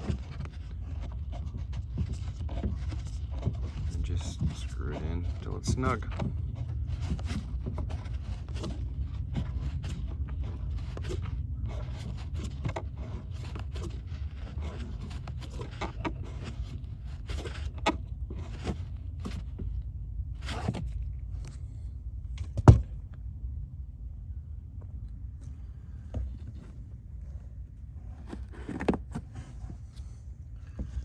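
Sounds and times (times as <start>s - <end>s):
plastic parts clicking and scraping: 0.0s - 19.7s, 28.2s - 30.0s
steady low rumble: 0.0s - 28.5s.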